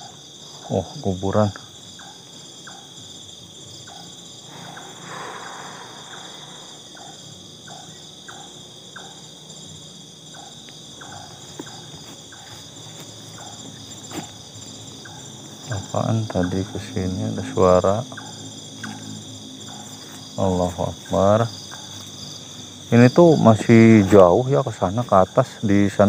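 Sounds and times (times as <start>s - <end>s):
crickets and insects chirping: 0.0s - 26.0s
vegetation rustling: 10.8s - 17.6s
footsteps through grass: 11.4s - 14.8s.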